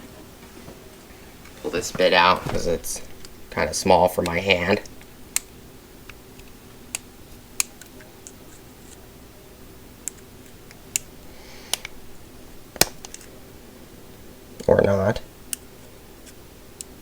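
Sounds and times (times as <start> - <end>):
soft rustle: 0.4 - 3.6.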